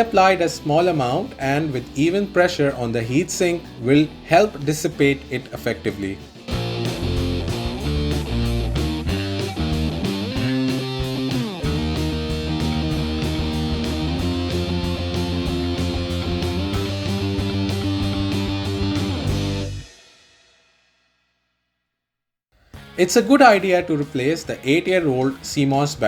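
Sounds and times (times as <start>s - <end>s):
guitar music over a steady beat: 3.6s - 19.9s, 22.6s - 23.1s.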